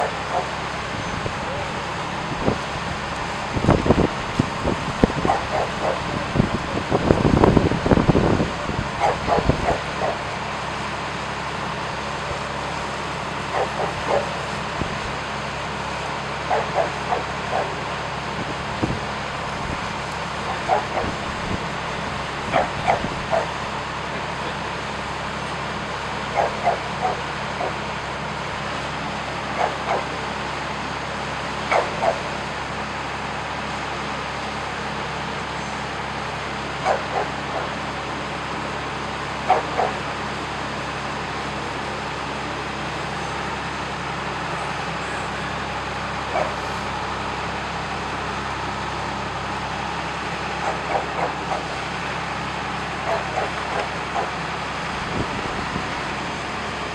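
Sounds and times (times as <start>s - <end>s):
low engine hum: 0.0s - 56.9s
dog barking: 5.1s - 6.3s, 9.0s - 10.3s, 13.5s - 14.4s, 16.4s - 17.8s, 20.5s - 21.2s, 22.5s - 23.6s, 26.3s - 27.8s, 29.5s - 30.2s, 31.7s - 32.3s, 36.8s - 37.8s, 39.4s - 40.0s, 46.3s - 46.9s, 50.6s - 51.7s, 53.0s - 54.4s.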